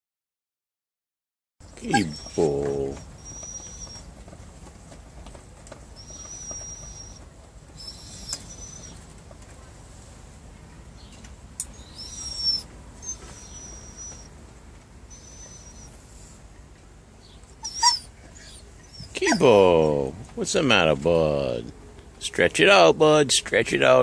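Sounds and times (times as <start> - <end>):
dog whining: 1.7 - 4.3, 5.9 - 9.1, 11.7 - 14.4, 15.1 - 16.0, 17.5 - 20.1.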